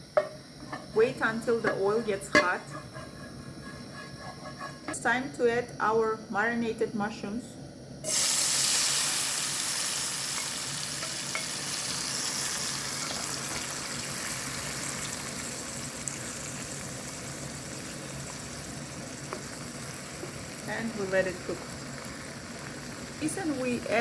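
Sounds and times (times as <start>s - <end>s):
mushrooms sizzling in hot oil: 8.0s - 24.0s.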